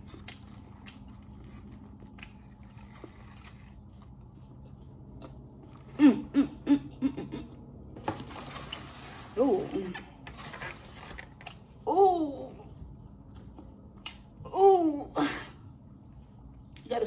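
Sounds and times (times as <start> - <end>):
person chewing: 0.0 - 6.3, 12.7 - 14.4.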